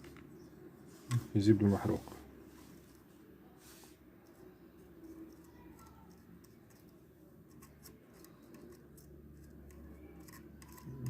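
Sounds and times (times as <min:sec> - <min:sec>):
small tools clicking and scratching: 0:04.2 - 0:11.0.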